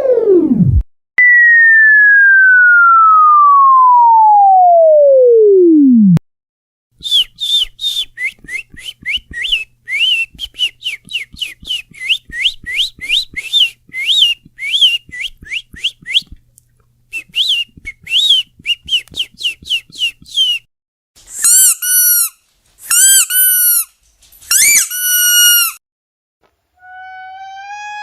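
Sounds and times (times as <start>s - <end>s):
chirping whistles: 7.0s - 16.3s.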